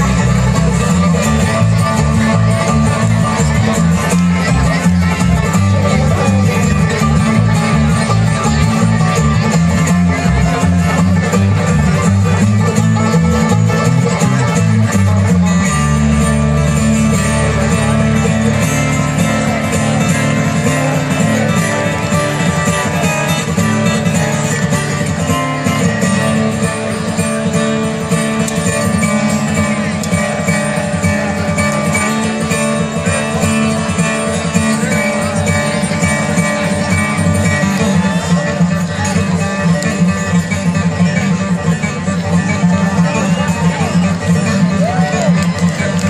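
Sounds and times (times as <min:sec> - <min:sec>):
bluegrass band playing: 0:00.0 - 0:46.0
low bass notes: 0:00.0 - 0:46.0.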